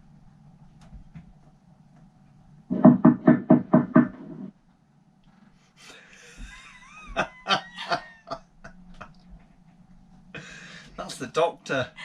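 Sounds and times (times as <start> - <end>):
knocking on door: 2.7 - 4.5.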